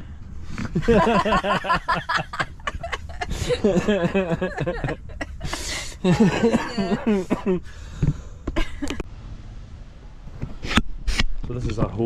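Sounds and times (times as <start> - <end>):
person chuckling: 0.7 - 7.6
breathy intake: 5.4 - 8.4.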